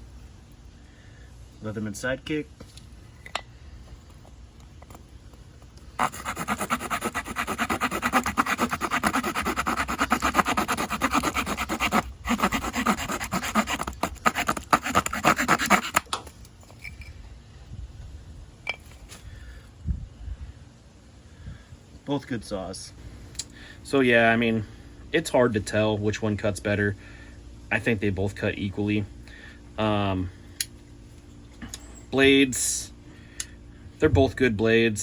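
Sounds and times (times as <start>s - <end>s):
saw blade sawing through wood: 6.0s - 16.1s.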